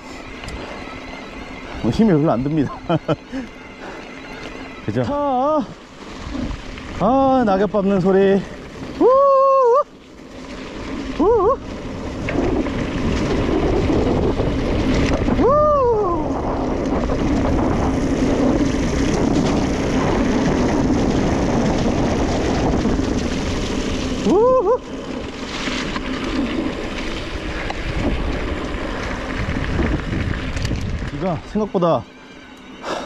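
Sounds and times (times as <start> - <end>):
swooping pitched squeals: 0.0 - 6.6, 31.1 - 33.0
wind on microphone: 0.0 - 9.8, 11.0 - 32.1
tyres rolling over leaves: 0.0 - 15.4, 16.2 - 33.0.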